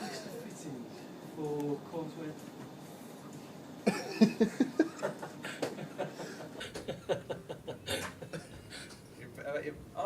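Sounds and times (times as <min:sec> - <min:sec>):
person chuckling: 0:03.8 - 0:08.9.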